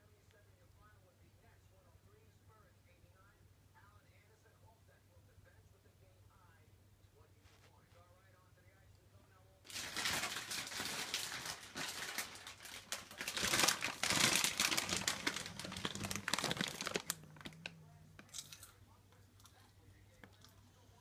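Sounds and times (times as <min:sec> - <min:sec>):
plastic packaging crinkling: 0:09.7 - 0:18.8.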